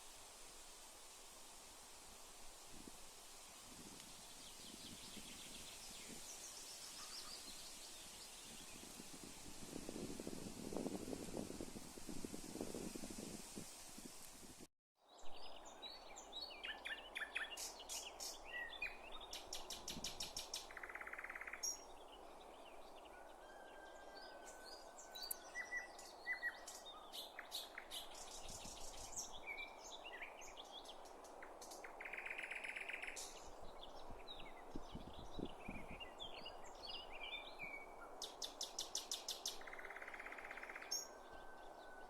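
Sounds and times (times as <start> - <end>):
nightingale song: 15.1 - 23.8, 24.5 - 42.0.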